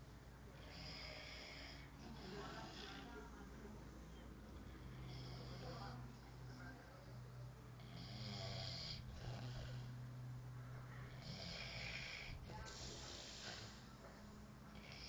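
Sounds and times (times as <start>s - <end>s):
man snoring: 0.6s - 3.1s, 7.8s - 10.0s, 11.2s - 13.8s, 14.7s - 15.0s.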